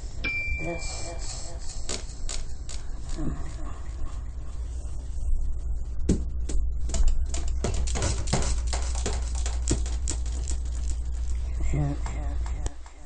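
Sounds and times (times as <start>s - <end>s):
household items clicking and clattering: 6.9s - 11.4s.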